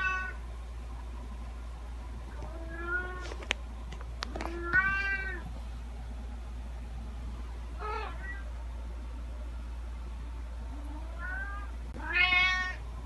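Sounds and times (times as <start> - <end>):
cat meowing: 0.0 - 0.4, 2.5 - 3.2, 4.5 - 5.4, 7.8 - 8.4, 11.0 - 12.8
steady low hum: 0.0 - 13.0.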